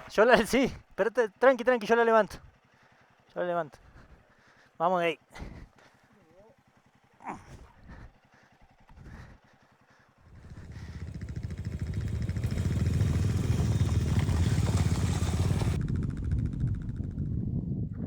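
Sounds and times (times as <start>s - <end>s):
motorcycle engine running: 2.4s - 4.1s, 6.3s - 17.9s.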